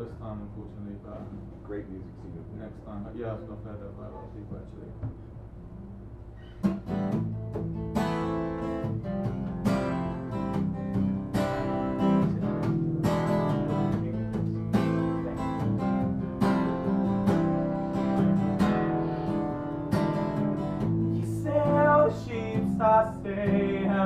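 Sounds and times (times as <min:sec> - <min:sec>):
acoustic guitar strumming chords: 0:06.4 - 0:24.0.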